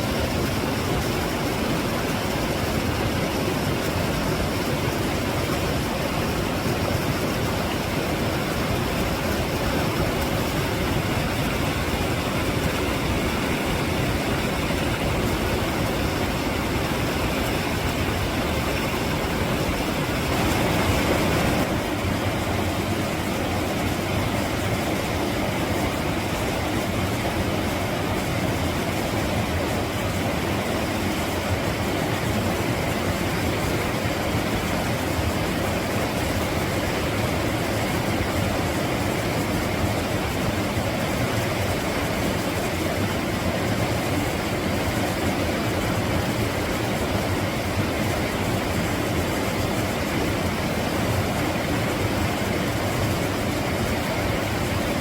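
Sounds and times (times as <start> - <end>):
stream rushing over rocks: 0.0 - 55.0.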